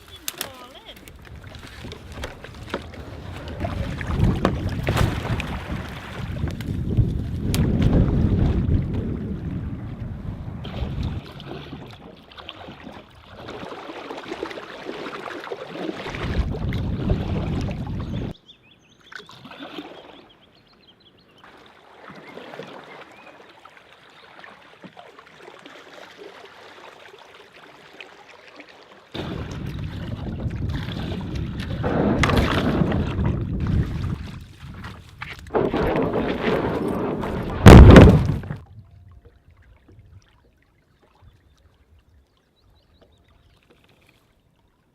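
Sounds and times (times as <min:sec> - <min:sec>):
water lapping and splashing: 0:00.0 - 0:18.4, 0:19.0 - 0:44.9
wind buffeting microphone: 0:01.1 - 0:11.9, 0:16.1 - 0:18.4, 0:29.2 - 0:39.0.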